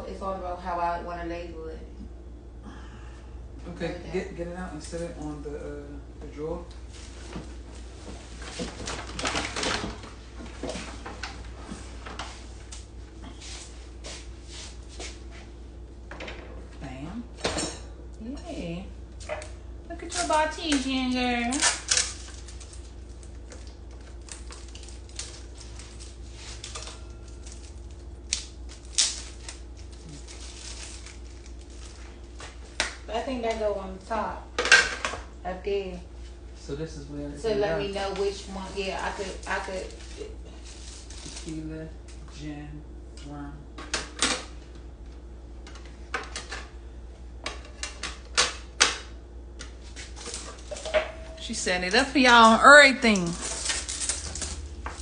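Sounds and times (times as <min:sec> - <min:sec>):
steady low hum: 0:00.0 - 0:55.0
plastic parts and packaging handled: 0:08.4 - 0:10.0.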